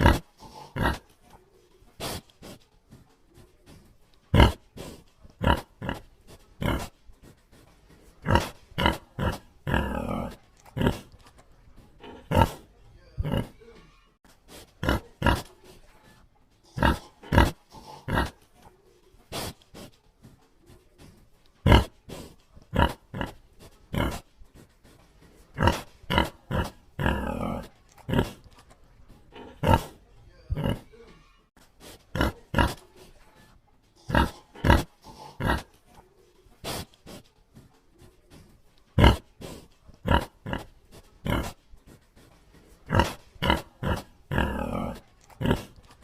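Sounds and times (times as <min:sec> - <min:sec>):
pig grunting: 0:00.0 - 0:01.2, 0:04.3 - 0:07.0, 0:07.9 - 0:13.7, 0:14.8 - 0:15.6, 0:16.7 - 0:18.5, 0:21.6 - 0:24.3, 0:25.3 - 0:28.6, 0:29.2 - 0:31.0, 0:32.1 - 0:33.0, 0:34.0 - 0:35.8, 0:39.0 - 0:41.6, 0:42.8 - 0:46.0.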